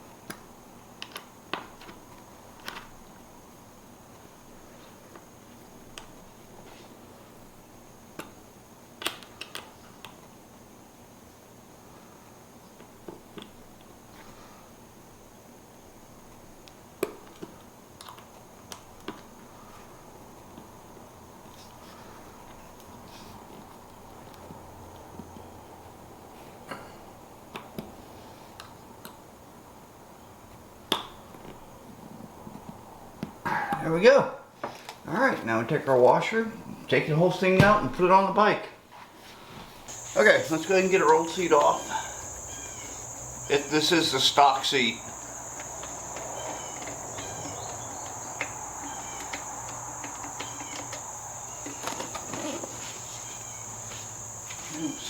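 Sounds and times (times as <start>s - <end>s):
crickets chirring: 39.9s - 55.0s.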